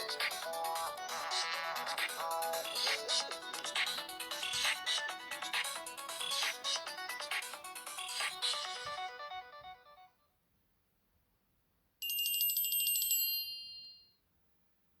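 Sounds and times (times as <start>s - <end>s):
stepping electronic ringtone melody: 0.0s - 10.1s.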